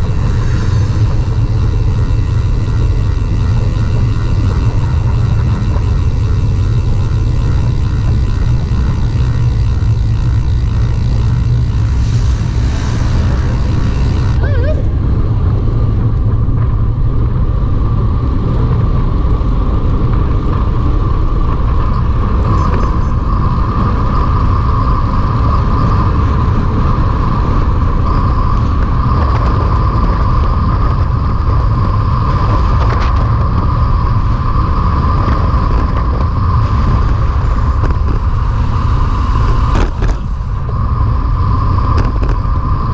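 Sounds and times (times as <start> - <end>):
bicycle tyre and road noise: 0.0 - 42.9
thin steady whine: 0.0 - 42.9
wind rumbling on microphone: 0.0 - 42.9.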